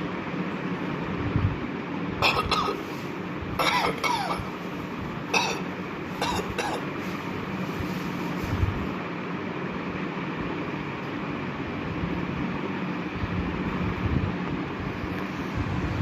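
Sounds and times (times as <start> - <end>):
steady background noise: 0.0 - 16.0
person coughing: 2.2 - 2.8, 3.6 - 4.5, 5.3 - 6.9.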